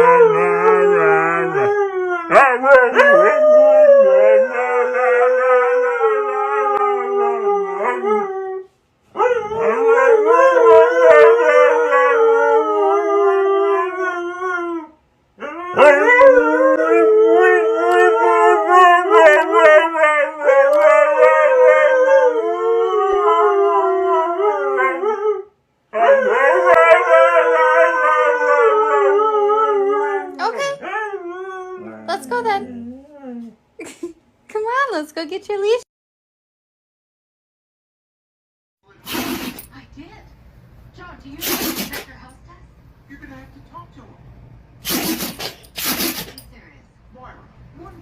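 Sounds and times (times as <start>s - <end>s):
dog howling: 0.0s - 33.6s.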